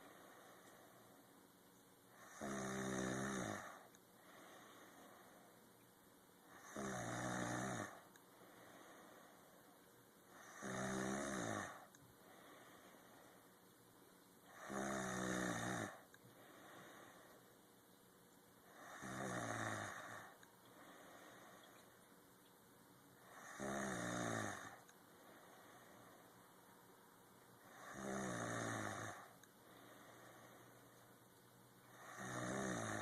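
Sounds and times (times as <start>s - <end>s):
quiet breaths: 0.0s - 33.0s
person snoring: 2.1s - 5.4s, 6.5s - 9.4s, 10.3s - 13.4s, 14.5s - 17.4s, 18.6s - 21.7s, 23.2s - 26.2s, 27.6s - 30.7s, 31.9s - 33.0s.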